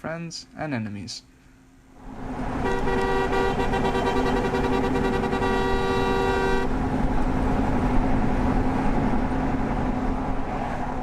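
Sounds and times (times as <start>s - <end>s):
vehicle engine and road noise: 0.0s - 11.0s
vehicle horn chord: 2.6s - 6.8s.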